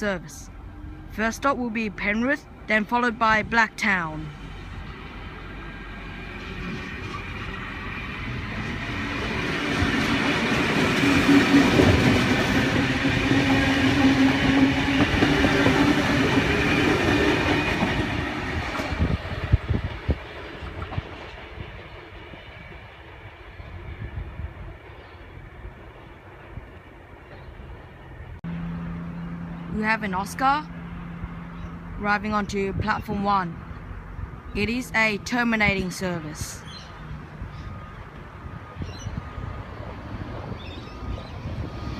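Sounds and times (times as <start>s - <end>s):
wheels clacking over rail joints: 4.8s - 22.2s
electric train motor hum: 28.1s - 32.3s.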